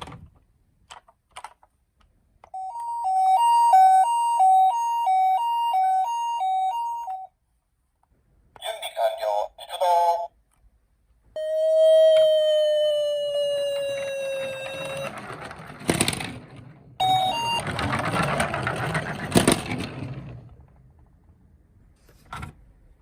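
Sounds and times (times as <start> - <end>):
held tone: 2.5 - 7.3, 11.4 - 15.6, 17.0 - 18.0
toy cars rattling down slope: 12.2 - 20.9.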